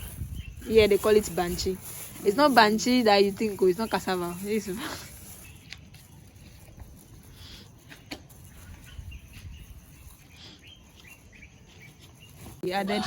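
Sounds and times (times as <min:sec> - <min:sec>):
faint bird chirps: 0:03.3 - 0:13.0.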